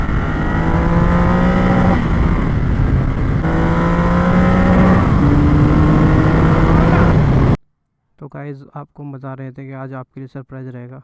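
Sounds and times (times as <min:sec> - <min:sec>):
motorcycle engine accelerating: 0:00.0 - 0:07.6.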